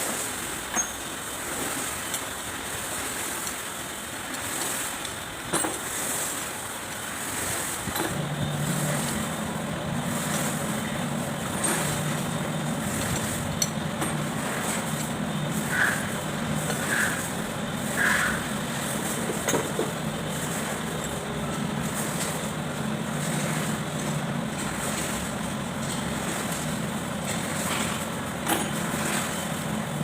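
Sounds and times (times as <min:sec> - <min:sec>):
low machine hum: 0:07.9 - 0:30.0.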